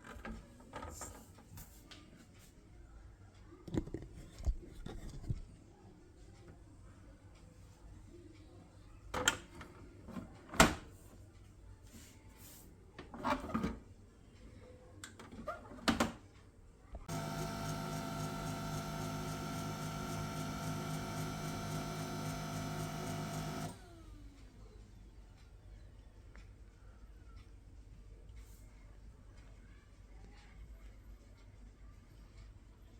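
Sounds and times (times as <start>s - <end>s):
printer motor whirring: 17.1s - 24.2s.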